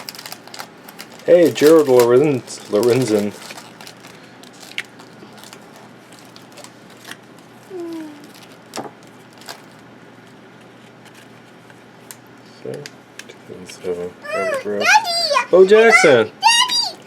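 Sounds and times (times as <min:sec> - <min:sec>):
person humming: 0:07.7 - 0:08.3.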